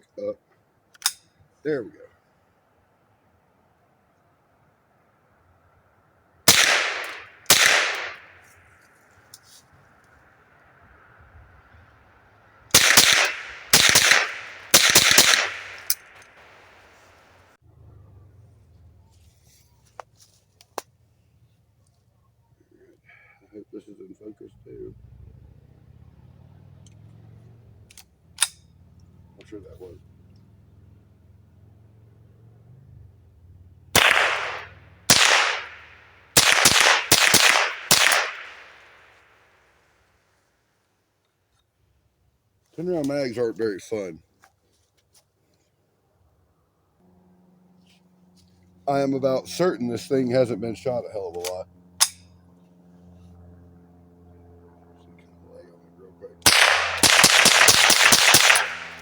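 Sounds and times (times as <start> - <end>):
rifle shots with ringing tail: 6.5 - 8.5, 12.7 - 16.7, 33.9 - 39.2, 56.4 - 59.0.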